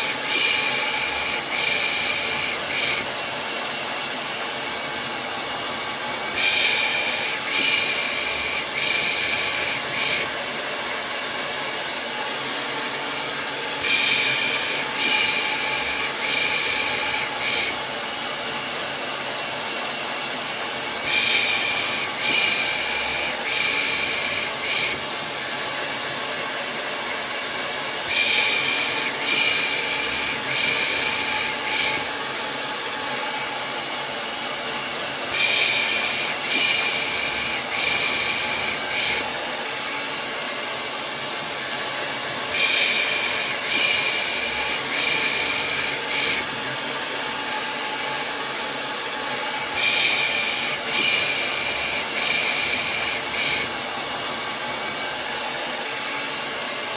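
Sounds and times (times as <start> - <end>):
hair dryer running: 0.0 - 56.9.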